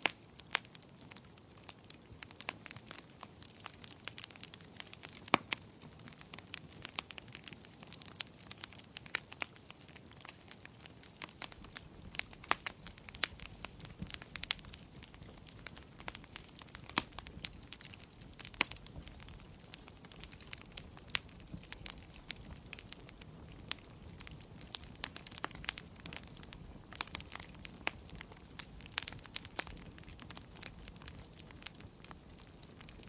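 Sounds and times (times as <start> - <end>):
fireplace fire crackling: 0.0 - 33.0.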